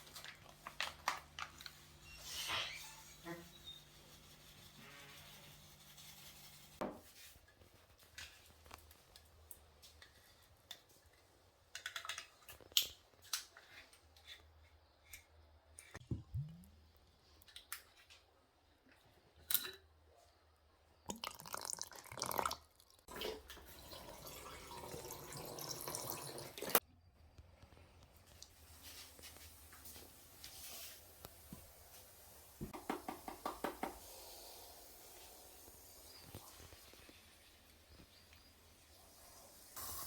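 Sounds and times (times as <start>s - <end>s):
kitchen items clicking and knocking: 11.7s - 13.4s
water running from tap: 21.5s - 26.8s.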